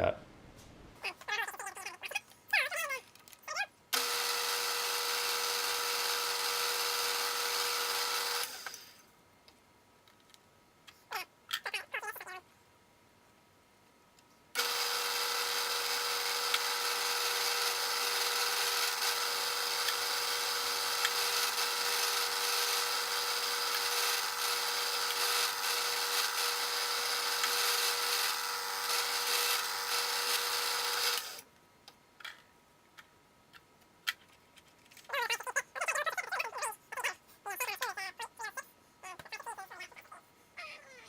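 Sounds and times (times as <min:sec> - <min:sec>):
milling machine whining: 0:04.0 - 0:09.0, 0:14.6 - 0:31.4.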